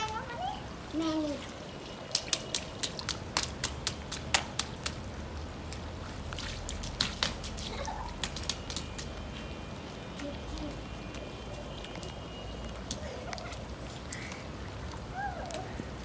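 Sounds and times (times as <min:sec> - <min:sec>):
water dripping and splattering: 0:00.0 - 0:16.0.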